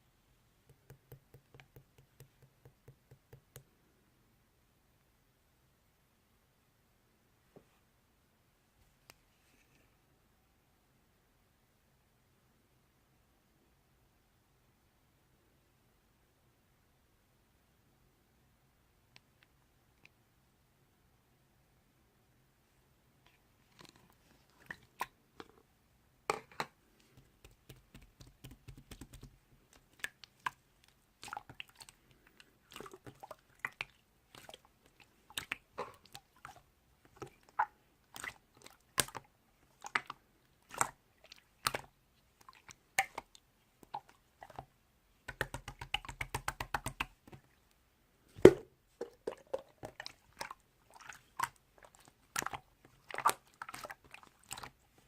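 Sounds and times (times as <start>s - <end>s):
slime squished by hand: 32.6s - 39.2s, 50.0s - 54.8s.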